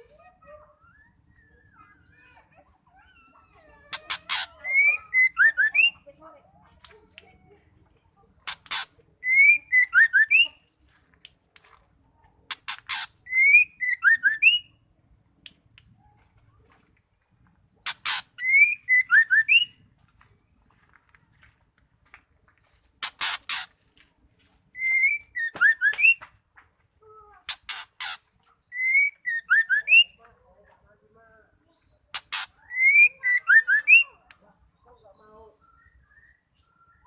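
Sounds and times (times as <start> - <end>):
bird calling with rasping notes: 0.2 - 6.1, 8.4 - 10.6, 12.5 - 14.8, 17.8 - 19.8, 22.9 - 23.8, 24.8 - 26.3, 27.4 - 30.2, 31.7 - 37.0.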